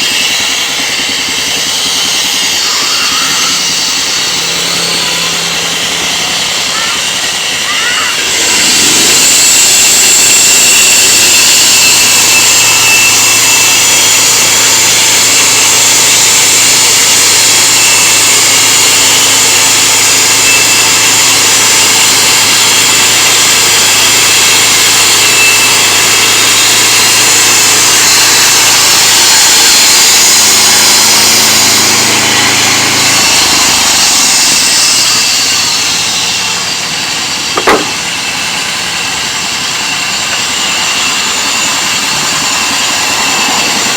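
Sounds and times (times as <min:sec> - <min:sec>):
saw cutting through wood: 0:00.0 - 0:43.9
engine humming: 0:00.8 - 0:11.3, 0:25.4 - 0:43.9
sharp knock: 0:37.6 - 0:38.1.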